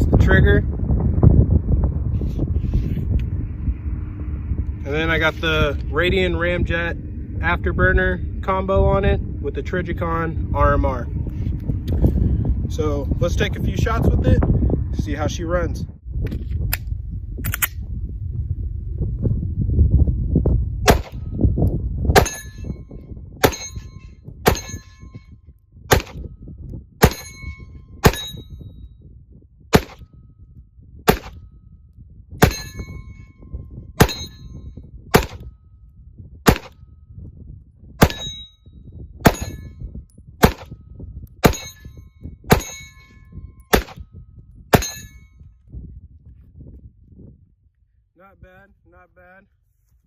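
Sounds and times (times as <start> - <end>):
pistol shots: 20.9 - 21.2, 25.9 - 26.2, 29.7 - 30.0, 31.1 - 31.4, 35.1 - 35.4, 36.5 - 36.8, 38.0 - 38.3, 39.2 - 39.6, 40.4 - 40.7, 42.5 - 42.8, 43.7 - 44.0
metallic ding of steel targets: 22.2 - 22.8, 23.4 - 25.3, 27.0 - 28.6, 32.4 - 33.3, 34.0 - 34.7, 38.0 - 38.6, 39.3 - 39.8, 41.4 - 43.9, 44.8 - 45.3.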